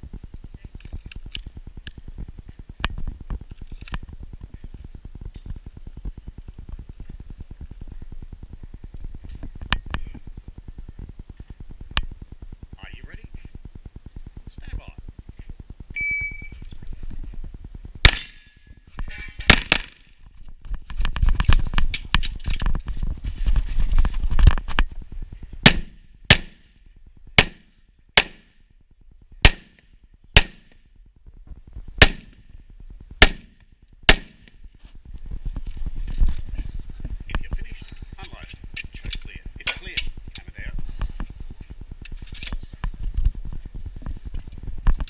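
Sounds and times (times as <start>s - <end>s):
shot timer beep: 16.0s - 16.6s
pistol shots: 18.0s - 18.4s, 19.5s - 20.0s, 25.6s - 26.6s, 27.4s - 28.4s, 29.4s - 29.8s, 30.4s - 30.7s, 32.0s - 32.4s, 33.2s - 33.5s, 34.1s - 34.5s.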